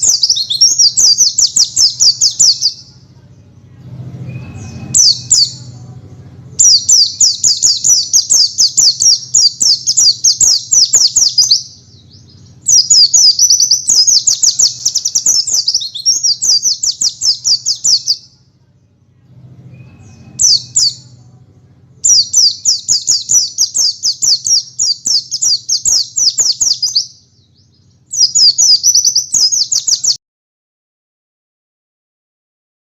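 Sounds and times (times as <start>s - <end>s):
songbird fast trilled song: 0.0s - 3.1s, 4.2s - 5.8s, 6.6s - 18.4s, 19.7s - 21.2s, 22.0s - 30.2s.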